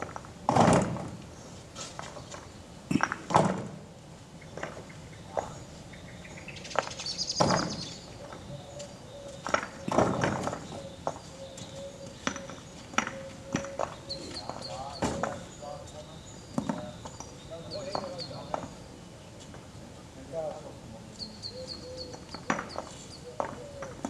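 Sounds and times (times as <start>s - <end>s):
paving bricks knocking and clinking: 16.6s - 17.3s, 22.4s - 24.0s.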